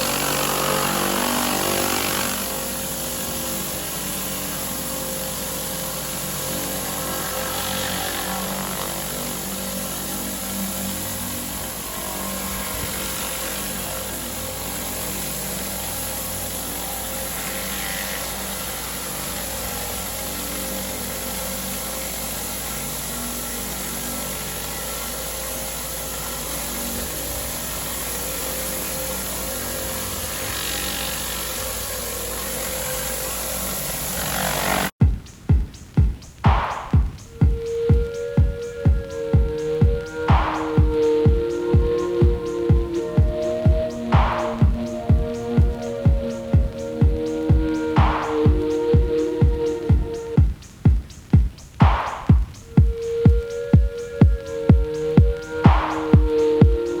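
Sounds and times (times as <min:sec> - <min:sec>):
pressure washer engine running: 0:00.0 - 0:35.0, 0:36.4 - 0:50.9
water jet hissing on paving: 0:00.0 - 0:57.0.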